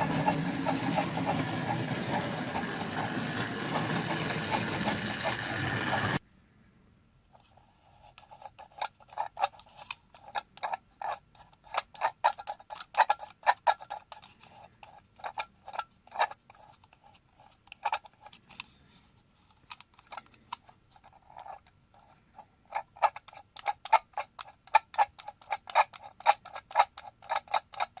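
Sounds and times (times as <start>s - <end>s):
electronic steam locomotive chuffing: 0.0s - 6.2s.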